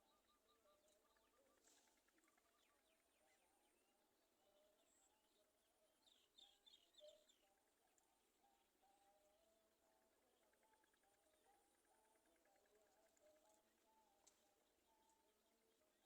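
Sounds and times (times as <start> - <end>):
faint bird chirps: 0.0 - 16.0.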